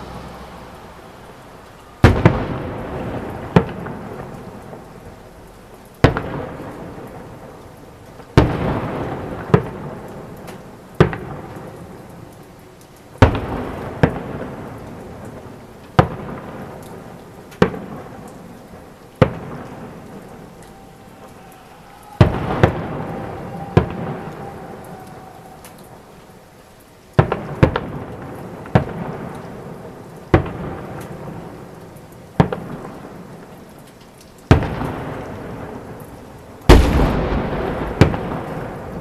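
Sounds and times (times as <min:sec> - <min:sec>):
rolling echo: 0:19.2 - 0:26.6, 0:36.7 - 0:39.0
firework shells bursting: 0:36.7 - 0:39.0.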